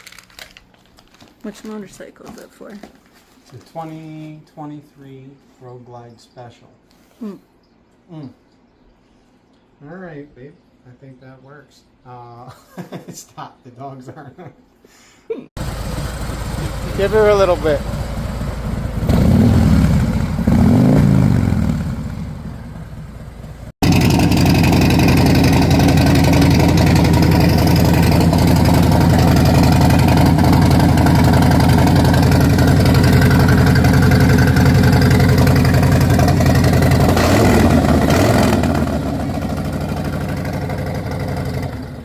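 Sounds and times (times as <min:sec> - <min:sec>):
motorcycle engine revving and idling: 0:15.6 - 0:42.0.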